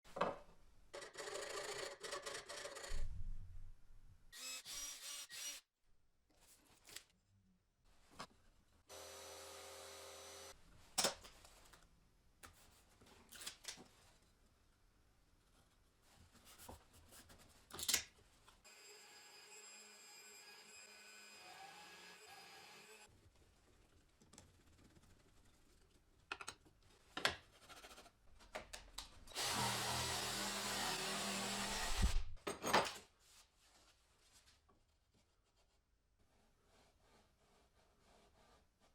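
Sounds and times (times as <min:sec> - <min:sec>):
power tool motor running: 0:08.9 - 0:10.5, 0:29.4 - 0:32.2.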